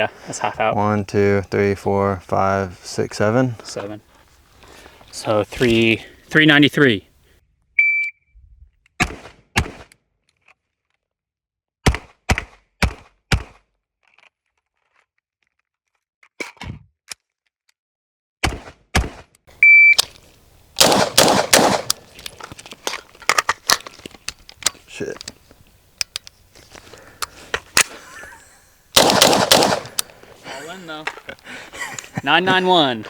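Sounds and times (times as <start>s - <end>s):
shot timer beep: 7.8s - 8.2s, 19.6s - 20.0s
gunshots: 9.0s - 9.9s, 20.8s - 22.0s, 28.9s - 30.2s.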